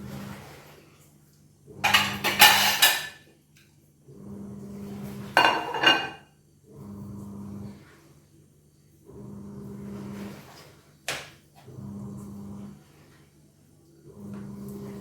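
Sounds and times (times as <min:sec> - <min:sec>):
kitchen utensils clattering: 0:01.8 - 0:03.2, 0:05.3 - 0:06.2.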